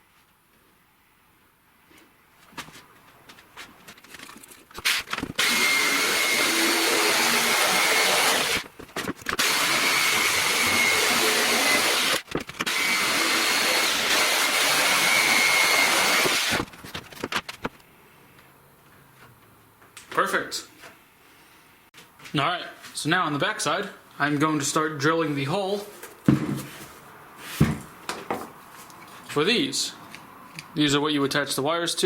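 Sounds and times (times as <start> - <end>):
jigsaw cutting wood: 4.9 - 8.7, 9.4 - 16.7.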